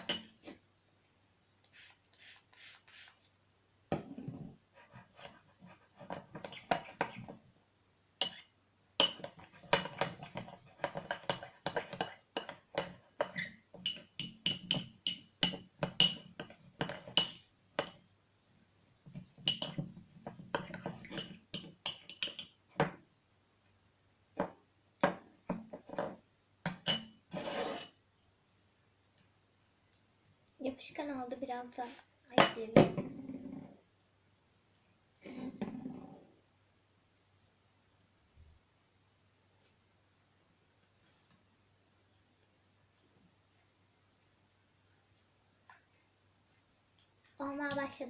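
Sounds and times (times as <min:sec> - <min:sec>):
utensil clinking against a dish: 0:09.0 - 0:18.0, 0:19.4 - 0:19.8, 0:20.5 - 0:22.6.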